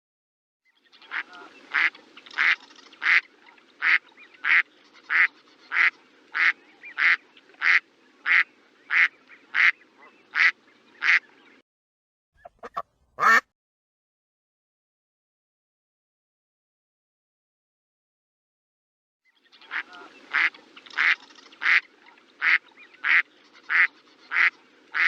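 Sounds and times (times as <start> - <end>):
duck quacking: 1.1 - 11.2, 12.4 - 13.5, 19.7 - 25.0.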